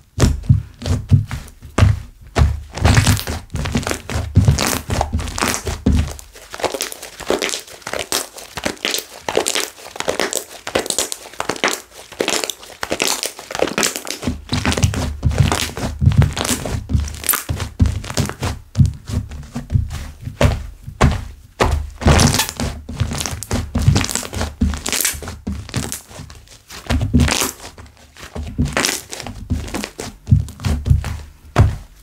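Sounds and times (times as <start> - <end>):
slime crackling and popping: 2.7 - 18.4, 22.0 - 30.6
soft thuds of slapping slime: 28.3 - 32.0.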